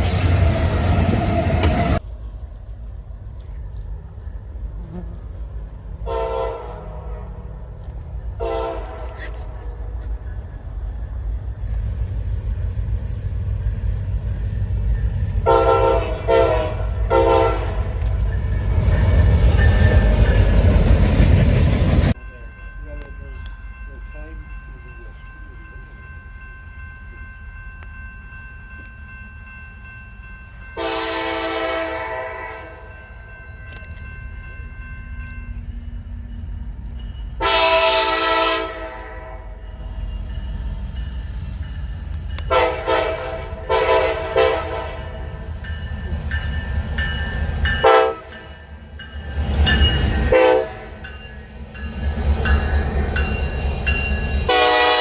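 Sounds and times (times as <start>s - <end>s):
train rumble: 0.0s - 55.0s
locomotive air horn blasts: 6.1s - 7.4s, 8.4s - 9.5s, 15.4s - 18.0s, 30.8s - 32.9s, 37.4s - 39.6s, 42.4s - 45.2s, 47.8s - 48.4s, 50.3s - 51.0s, 54.5s - 55.0s.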